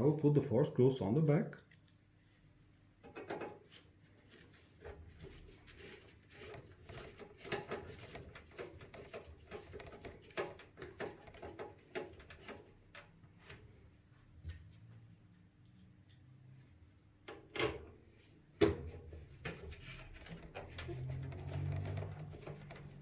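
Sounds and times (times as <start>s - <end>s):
screwdriver driving small screws: 6.4s - 10.5s, 20.2s - 23.0s.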